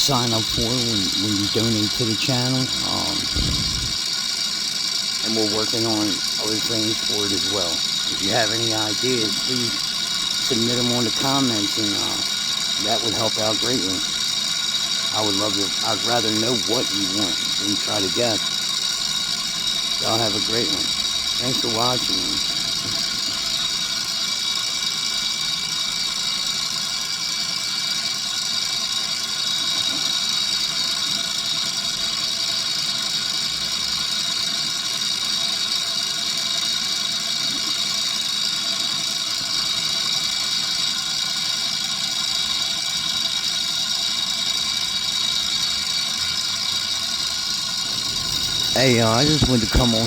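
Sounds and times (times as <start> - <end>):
constant high tones: 0.0 - 25.6, 43.6 - 50.0
machinery hiss: 0.0 - 50.0.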